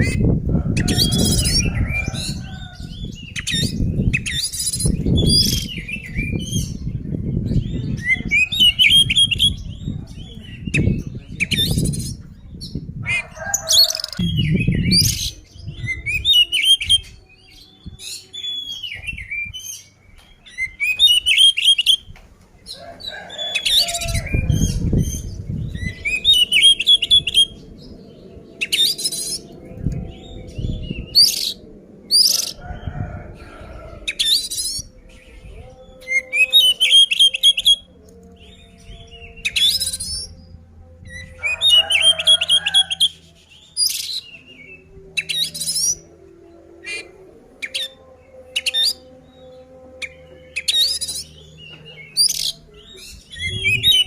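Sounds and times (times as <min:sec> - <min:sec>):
low rumbles: 0:00.0 - 0:18.0, 0:22.0 - 0:36.2, 0:52.6 - 0:54.0
bird singing whistles and trills: 0:14.1 - 0:22.1.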